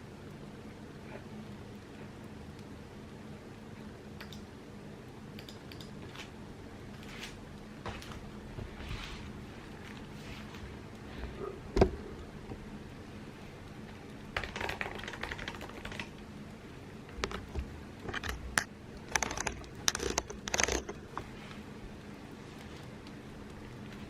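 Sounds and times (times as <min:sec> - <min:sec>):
keyboard typing: 0:04.2 - 0:04.5, 0:05.4 - 0:06.2, 0:14.4 - 0:16.2, 0:17.2 - 0:21.3.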